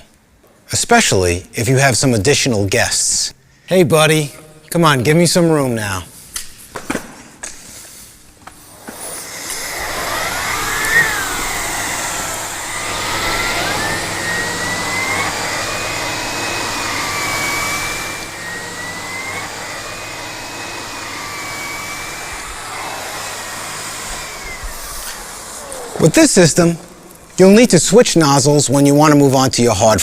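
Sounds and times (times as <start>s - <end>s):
vacuum cleaner running: 7.7s - 29.0s.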